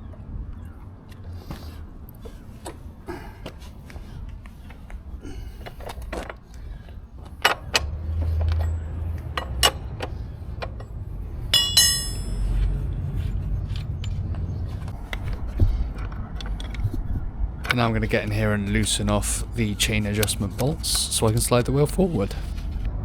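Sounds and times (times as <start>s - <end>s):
low steady rumble: 8.6s - 14.9s
metal knocks and clanks: 11.5s - 12.6s
ringing metallic clank: 11.5s - 12.6s.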